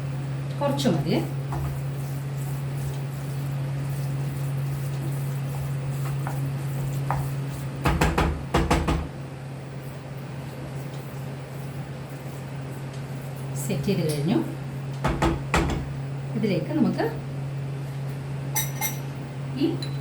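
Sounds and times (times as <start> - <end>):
steady low hum: 0.0 - 20.0
utensils clinking against a dish: 18.5 - 19.1.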